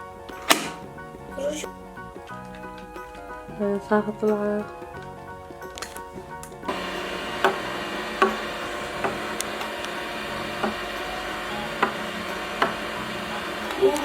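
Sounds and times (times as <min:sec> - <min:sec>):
sharp click: 0:00.4 - 0:00.8
toy vacuum motor whirring: 0:06.7 - 0:14.0.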